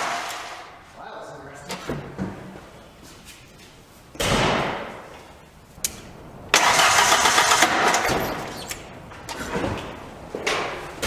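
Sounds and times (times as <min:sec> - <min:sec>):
engine cranking without starting: 0:06.5 - 0:08.9.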